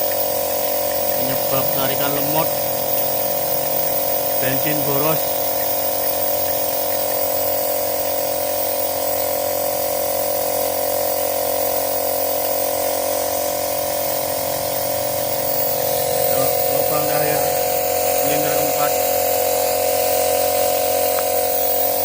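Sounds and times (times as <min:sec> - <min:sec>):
small motor humming: 0:00.0 - 0:22.0
constant hiss: 0:14.7 - 0:22.0.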